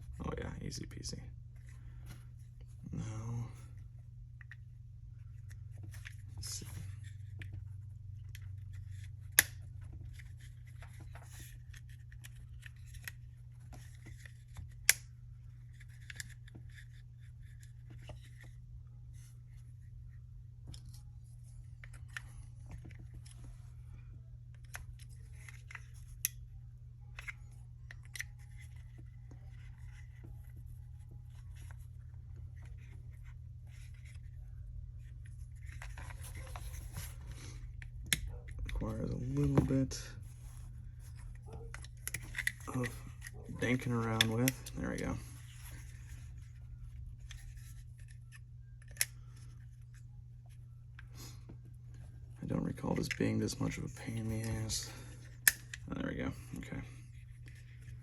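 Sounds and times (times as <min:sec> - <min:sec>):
steady low hum: 0:00.0 - 0:58.0.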